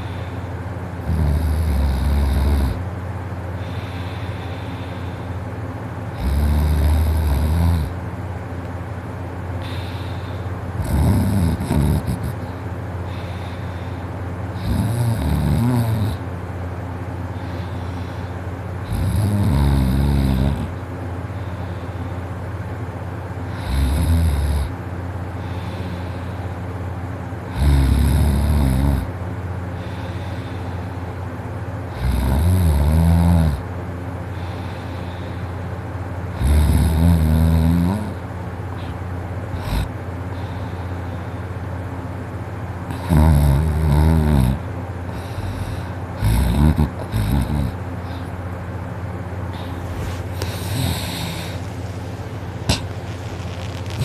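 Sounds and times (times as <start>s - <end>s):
person snoring heavily: 0.0s - 2.8s, 6.1s - 8.0s, 9.6s - 16.2s, 17.4s - 20.8s, 23.5s - 24.8s, 27.5s - 29.2s, 31.9s - 33.6s, 36.3s - 38.2s, 38.8s - 41.2s, 42.9s - 48.3s, 49.5s - 54.0s
steady low hum: 0.0s - 54.0s.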